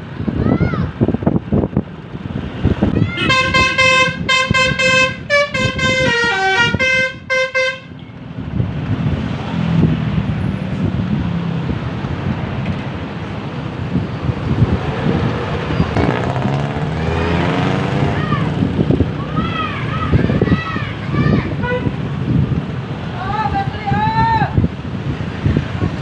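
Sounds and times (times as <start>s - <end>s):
bus engine and tyres rumbling: 0.0s - 26.0s
bus horn playing a tune: 3.0s - 8.0s, 21.5s - 22.1s.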